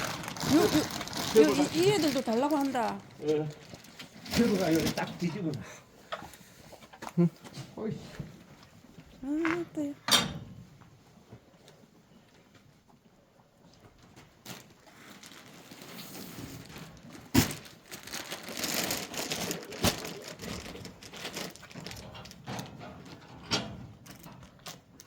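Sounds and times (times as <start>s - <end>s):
dry feed rustling: 14.5s - 22.1s.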